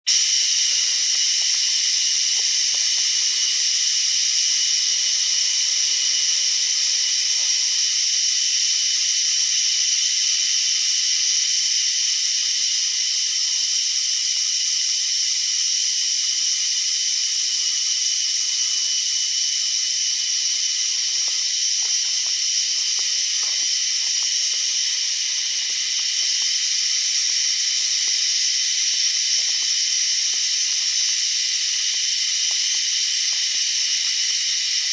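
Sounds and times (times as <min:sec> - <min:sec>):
cicada chorus buzzing: 0:00.0 - 0:34.9.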